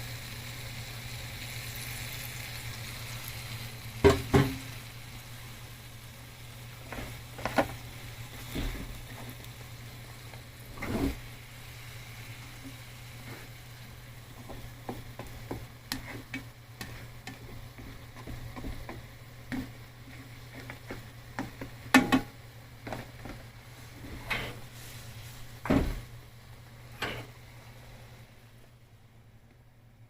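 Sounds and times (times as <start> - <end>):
light sizzling in a pan: 0.0 - 29.8
steady low hum: 0.0 - 30.0
knocks against cookware: 4.0 - 4.6, 21.4 - 22.3.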